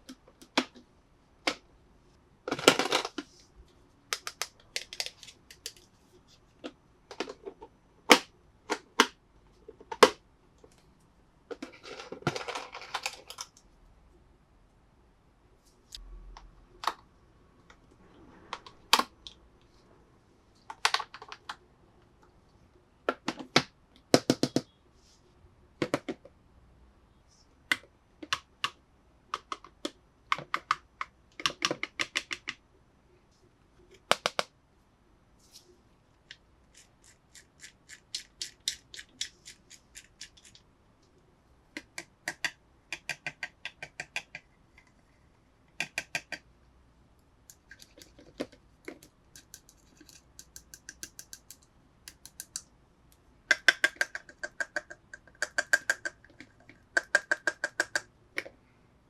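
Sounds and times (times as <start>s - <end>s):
plastic toy parts clicking: 4.1s - 5.8s, 36.8s - 40.6s, 47.5s - 52.7s, 53.5s - 58.5s.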